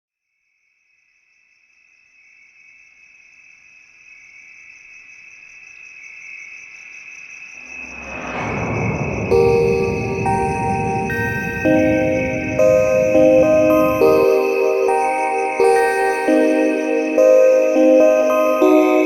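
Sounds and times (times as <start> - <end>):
rising whoosh: 7.6 - 17.1
high trilling tone: 7.7 - 19.0.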